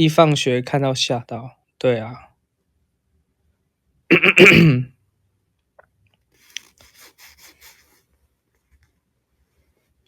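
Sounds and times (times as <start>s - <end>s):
man clearing throat: 4.1s - 4.9s.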